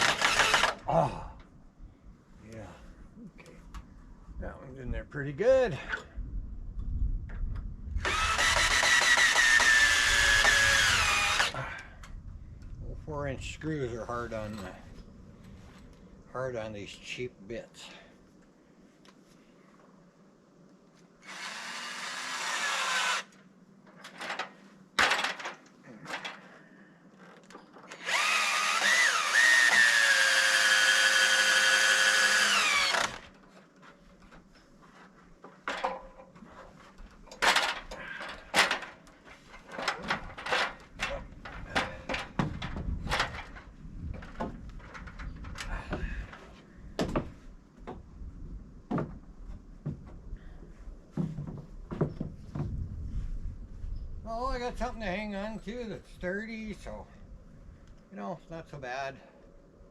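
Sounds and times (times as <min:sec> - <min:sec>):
power drill driving screws into wood: 0:00.0 - 0:00.9, 0:08.0 - 0:11.6, 0:21.2 - 0:23.4, 0:27.9 - 0:33.4.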